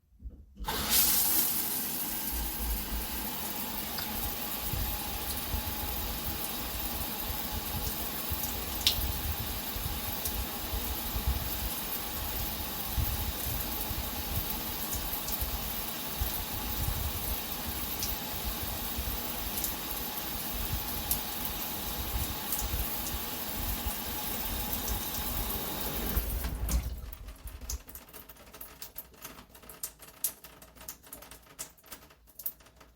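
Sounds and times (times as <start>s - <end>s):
shower water hissing and splashing: 0.6s - 29.0s
water droplets ticking: 7.8s - 9.1s.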